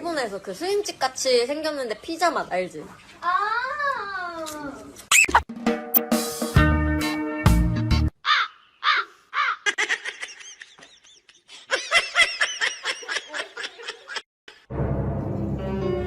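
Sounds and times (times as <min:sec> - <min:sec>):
bird cawing: 0:08.2 - 0:09.8.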